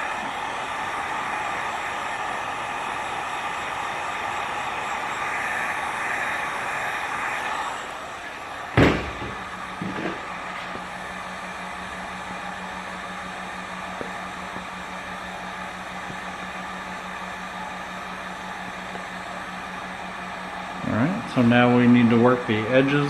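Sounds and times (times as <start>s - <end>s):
heat gun blower: 0.0s - 23.0s
sharp knocks: 8.8s - 10.2s.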